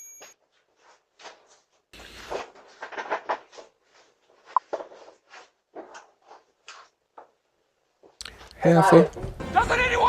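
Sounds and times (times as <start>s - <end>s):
scuffs and rustles: 0.4s - 7.0s.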